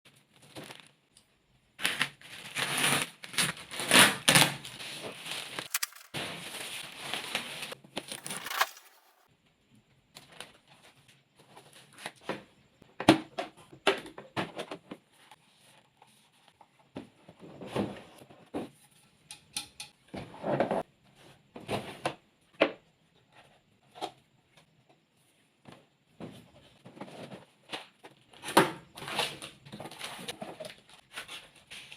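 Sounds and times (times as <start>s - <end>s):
packaging rustling and clattering: 5.7s - 6.2s, 8.1s - 9.3s
plastic parts clicking: 5.7s - 6.2s, 8.2s - 9.2s.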